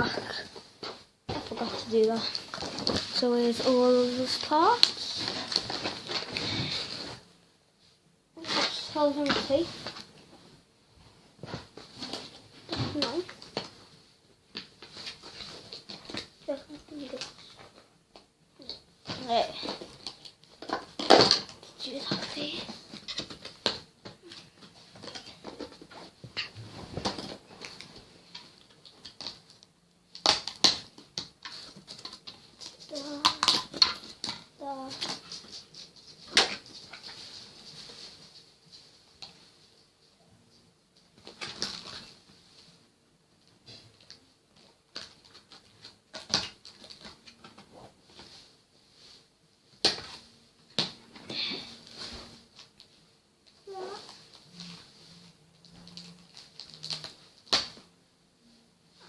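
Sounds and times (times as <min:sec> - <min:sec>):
rustling plastic parts and packaging: 0:00.4 - 0:07.2, 0:18.6 - 0:38.9, 0:41.1 - 0:42.3, 0:43.9 - 0:49.1, 0:51.2 - 0:58.0
packaging rustles: 0:01.4 - 0:07.1, 0:53.8 - 0:57.9.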